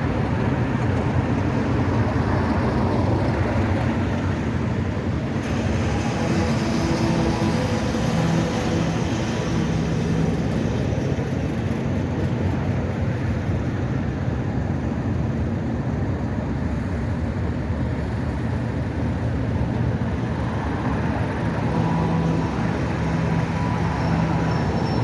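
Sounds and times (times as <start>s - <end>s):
diesel locomotive engines droning: 0.0s - 25.0s.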